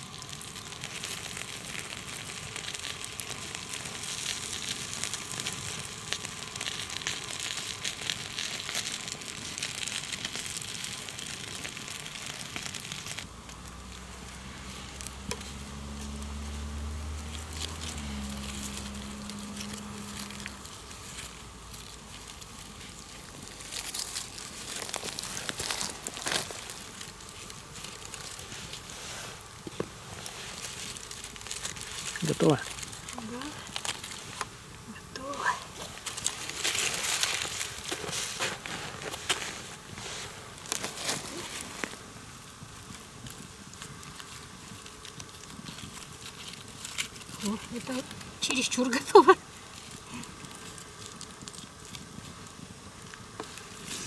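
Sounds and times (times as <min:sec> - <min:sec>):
food sizzling in a pan: 0:00.0 - 0:44.6, 0:47.3 - 0:54.0
low steady drone: 0:13.2 - 0:27.5.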